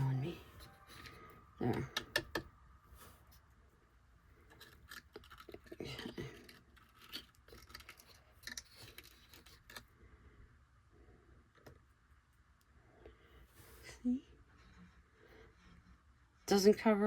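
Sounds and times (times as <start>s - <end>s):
craft materials clicking and scraping: 4.4s - 9.9s.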